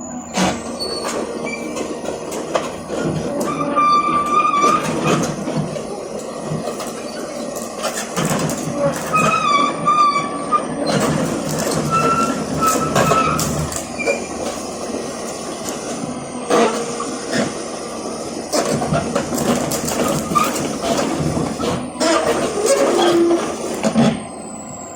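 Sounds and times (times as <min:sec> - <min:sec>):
excavator running: 0:00.0 - 0:24.9
metal squealing on metal: 0:00.3 - 0:01.8, 0:03.3 - 0:05.3, 0:09.0 - 0:14.3, 0:19.9 - 0:21.1, 0:22.0 - 0:23.8.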